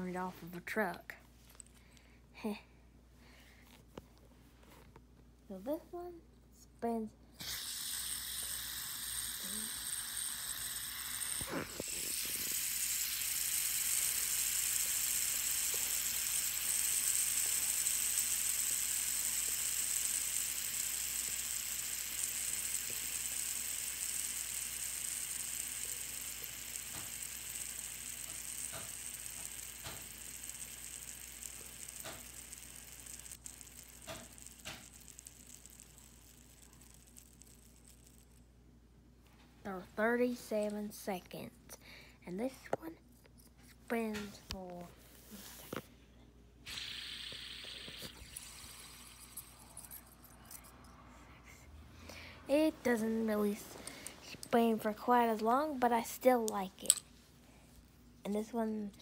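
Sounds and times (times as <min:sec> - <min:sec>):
fidget spinner whirring: 0:06.9 - 0:38.6, 0:46.6 - 0:57.3, 0:58.2 - 0:59.0.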